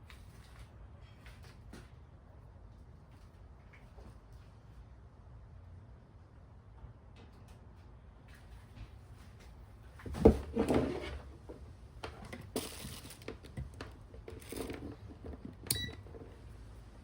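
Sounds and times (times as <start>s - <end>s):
rustles and clicks: 8.4s - 17.0s.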